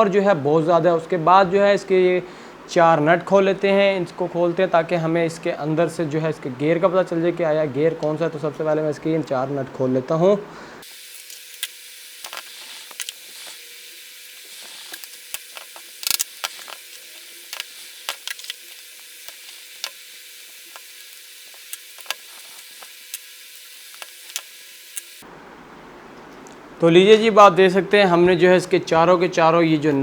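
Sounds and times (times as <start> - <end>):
steady hiss: 10.4 - 25.4.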